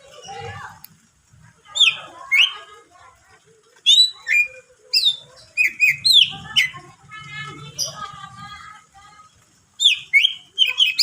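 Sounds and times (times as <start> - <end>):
bird twittering chatter: 1.7 - 2.7, 3.8 - 6.8, 9.8 - 11.0.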